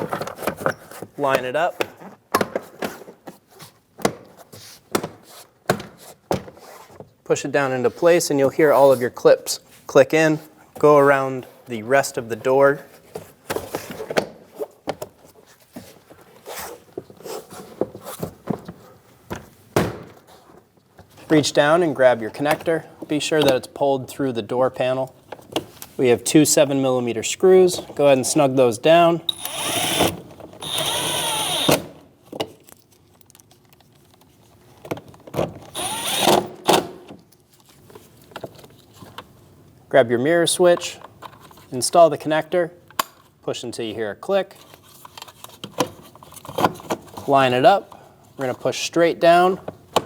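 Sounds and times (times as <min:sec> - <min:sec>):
cordless drill running: 0:29.3 - 0:31.9, 0:35.7 - 0:36.5.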